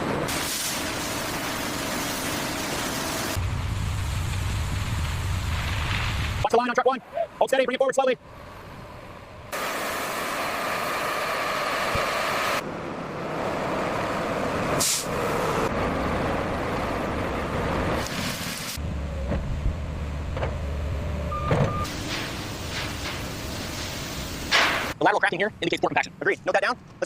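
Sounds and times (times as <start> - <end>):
short hiss: 0.3 - 2.4, 14.8 - 15.1, 21.9 - 25.0
brief beep: 21.3 - 21.9.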